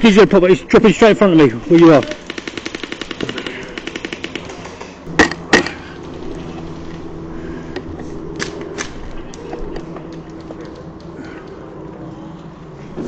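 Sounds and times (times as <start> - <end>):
airsoft gun full-auto burst: 1.8 - 4.6.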